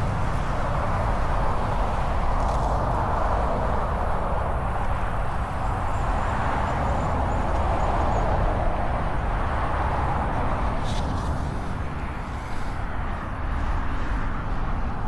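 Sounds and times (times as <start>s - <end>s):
car road and tyre noise: 0.0s - 15.0s.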